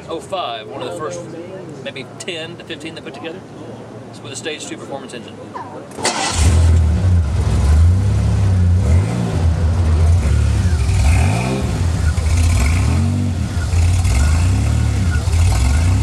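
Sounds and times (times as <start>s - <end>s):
car engine revving: 6.0s - 16.0s.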